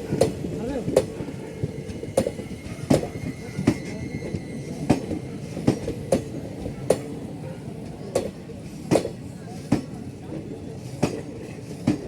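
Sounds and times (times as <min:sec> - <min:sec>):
train wheels clacking on rail joints: 0:00.0 - 0:07.1, 0:07.8 - 0:12.0
low rolling train rumble: 0:00.0 - 0:12.0
faint wheel squeal: 0:02.4 - 0:05.6.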